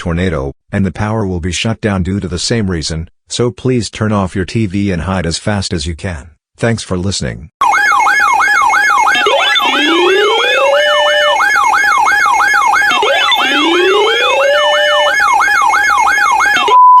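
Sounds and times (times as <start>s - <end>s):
fast yelp siren: 7.6s - 16.8s
rising siren wails: 7.6s - 16.8s
steady electronic tone: 8.2s - 17.0s.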